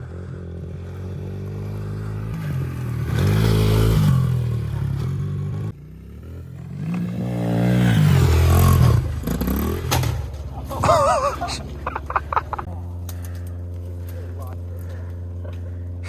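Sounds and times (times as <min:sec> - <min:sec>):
dirt bike engine revving: 0:00.0 - 0:16.0.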